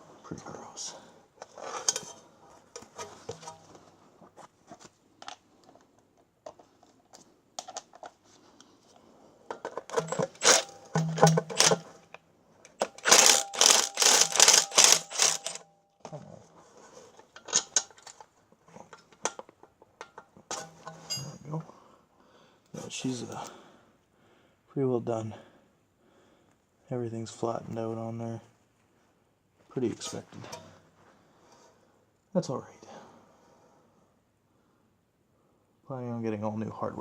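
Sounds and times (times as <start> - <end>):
impact wrench hammering: 10.0 - 11.8, 12.8 - 15.6
light metal tool clinks: 20.1 - 21.5.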